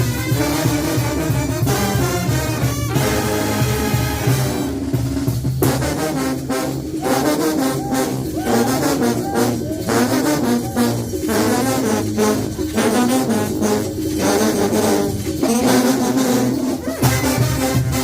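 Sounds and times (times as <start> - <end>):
brass band playing: 0.0 - 18.0.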